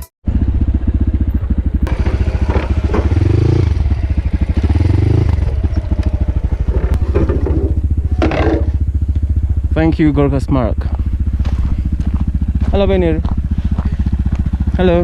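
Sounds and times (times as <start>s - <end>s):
dirt bike engine revving: 0.3s - 15.0s.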